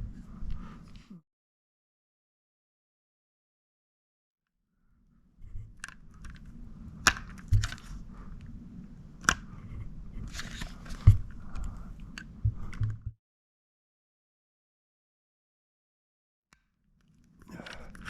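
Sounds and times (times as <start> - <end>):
plastic enclosure clicking and cracking: 5.8 - 8.0, 9.2 - 9.5
rustling handling noise: 9.3 - 12.3.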